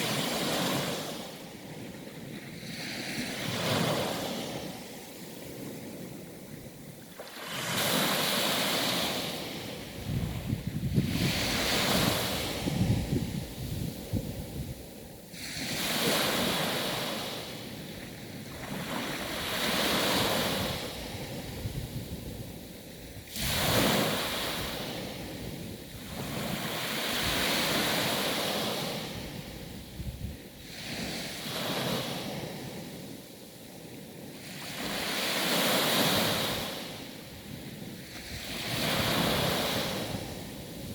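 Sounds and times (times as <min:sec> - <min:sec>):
sea waves breaking: 0:00.0 - 0:22.6, 0:23.2 - 0:29.7, 0:37.9 - 0:40.9.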